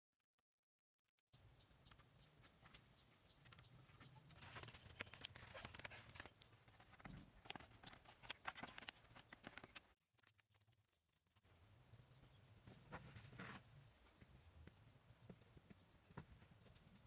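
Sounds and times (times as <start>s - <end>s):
taps clicks and scrapes of handwork: 1.8s - 11.0s.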